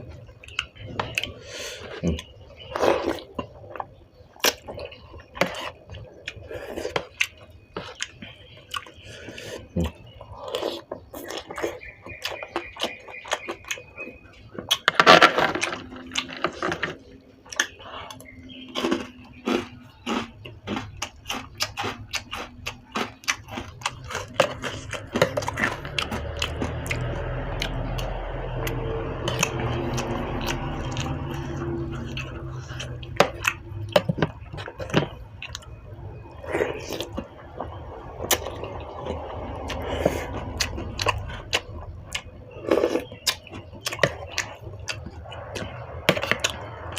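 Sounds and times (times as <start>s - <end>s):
slurping and chewing: 0.0s - 14.9s, 15.5s - 46.9s
low rumble: 23.9s - 42.8s.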